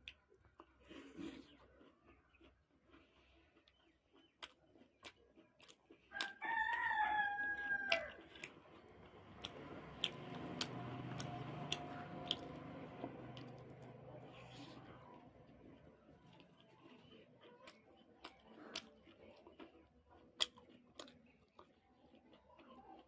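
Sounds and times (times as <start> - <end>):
small clicks of eating: 0.0 - 23.0
rooster crowing: 6.1 - 8.4.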